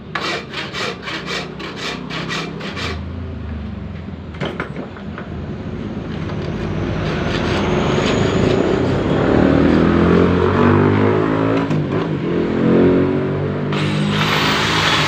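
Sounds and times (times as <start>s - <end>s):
engine revving: 5.9s - 15.0s.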